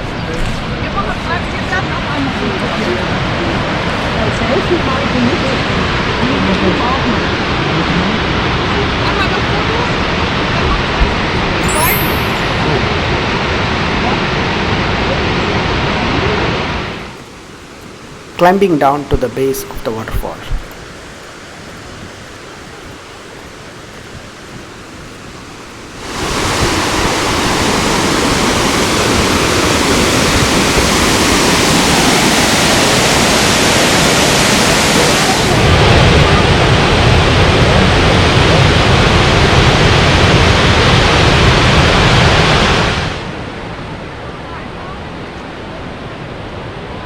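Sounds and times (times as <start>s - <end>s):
waterfall rushing: 14.4s - 43.1s.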